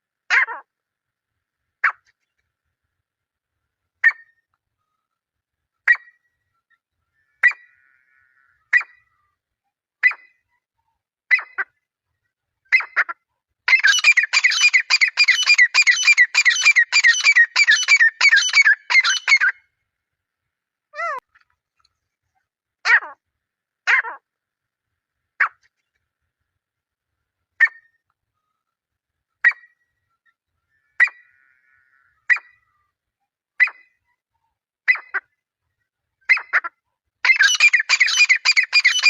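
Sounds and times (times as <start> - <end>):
francolin calling: 13.7 - 19.6, 37.2 - 39.0.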